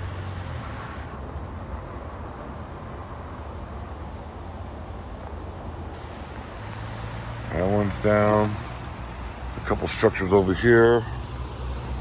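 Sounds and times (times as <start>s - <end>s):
insects chirring: 0.0s - 12.0s.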